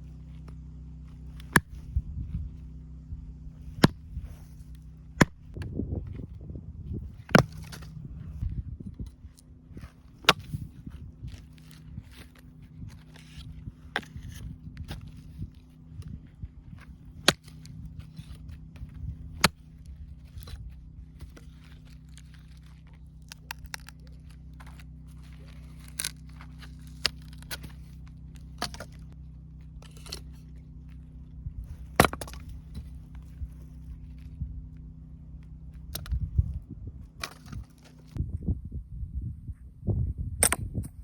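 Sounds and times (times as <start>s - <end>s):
steady low hum: 0.0s - 41.0s
firewood knocking and cracking: 31.8s - 33.2s.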